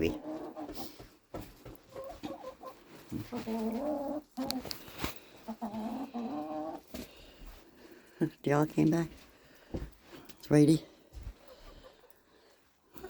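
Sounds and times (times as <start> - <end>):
chickens clucking: 0.0 - 7.5, 11.4 - 12.2.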